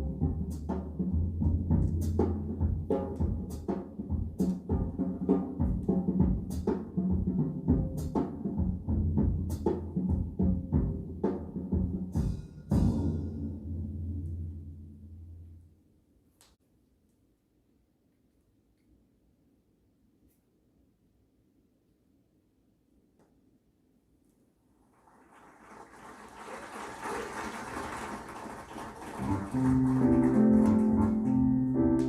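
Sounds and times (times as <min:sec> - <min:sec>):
drum hits and cymbal crashes: 0:01.5 - 0:14.4
steady bass line: 0:29.2 - 0:32.0.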